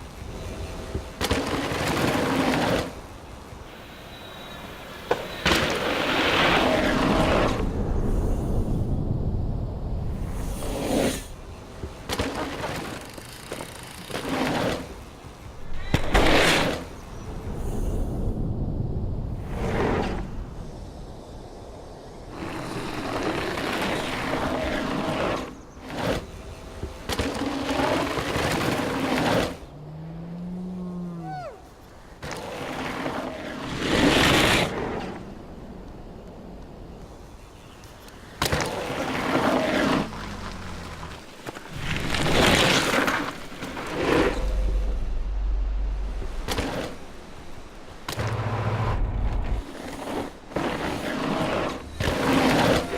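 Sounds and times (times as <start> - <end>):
bike rolling rumble: 0.0 - 3.7, 5.1 - 52.9
bike tyres on dirt: 0.0 - 18.6, 19.2 - 52.9
bike tyres skidding on gravel: 5.2 - 7.7, 22.4 - 26.5, 32.2 - 35.4, 38.4 - 44.9, 46.2 - 52.9
downward bending pitched tone: 44.4 - 46.5.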